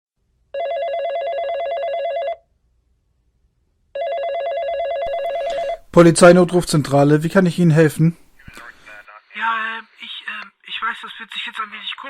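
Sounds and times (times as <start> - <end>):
telephone ringing: 0.6 - 2.4, 4.0 - 7.6.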